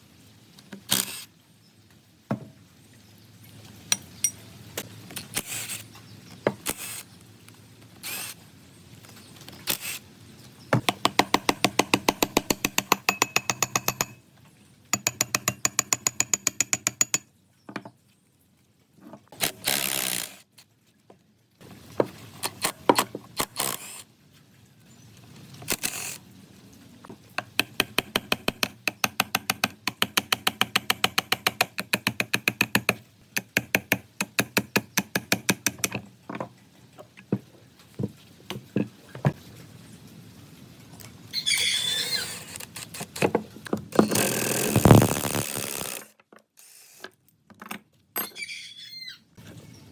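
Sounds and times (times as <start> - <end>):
rapid mechanical clicking on metal: 27.4 - 36.0.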